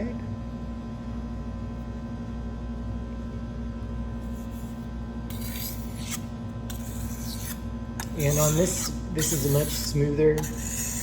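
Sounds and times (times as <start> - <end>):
electrical hum: 0.0 - 11.0
knife scraping on whetstone: 4.2 - 11.0.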